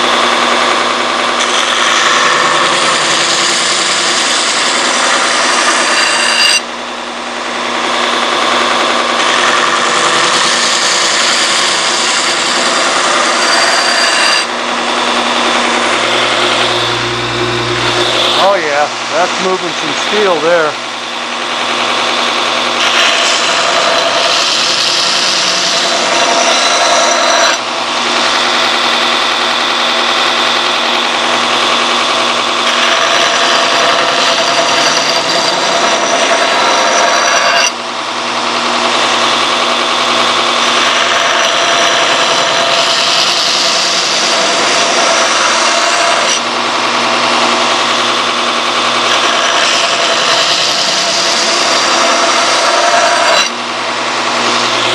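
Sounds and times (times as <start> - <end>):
belt grinder grinding steel: 0.0 - 6.8, 7.4 - 54.9.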